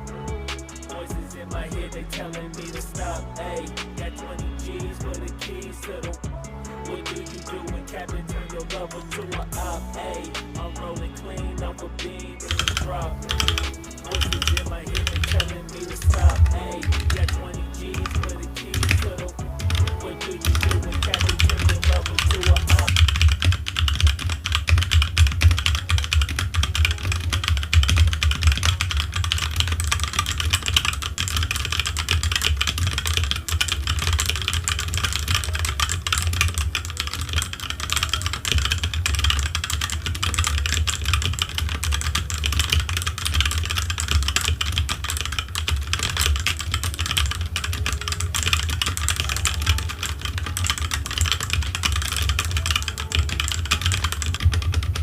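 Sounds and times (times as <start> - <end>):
mechanical keyboard typing: 11.6 - 55.0.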